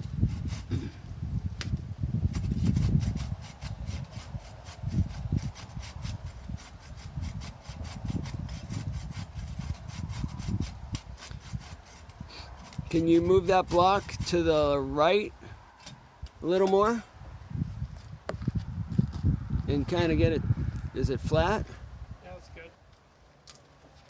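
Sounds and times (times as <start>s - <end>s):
hand saw cutting wood: 0.0s - 0.9s, 2.3s - 14.5s.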